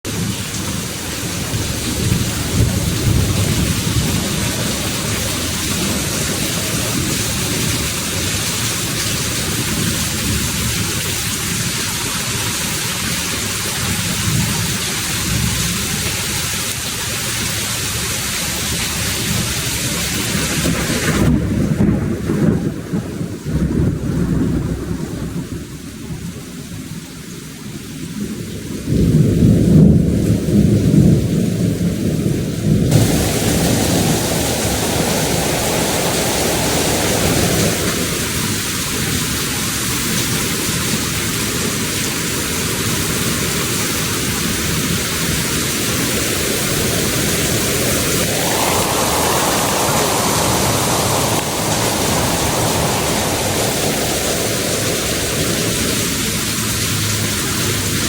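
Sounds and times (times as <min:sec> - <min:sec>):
heavy rain hissing: 0:00.1 - 0:23.6, 0:32.6 - 0:58.0.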